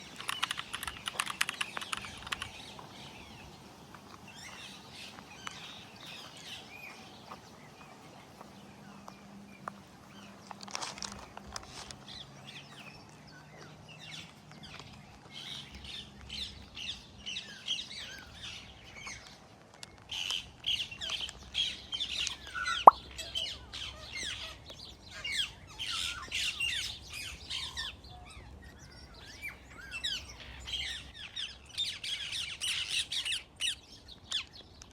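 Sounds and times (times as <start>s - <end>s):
small birds chirping: 0.0s - 34.9s.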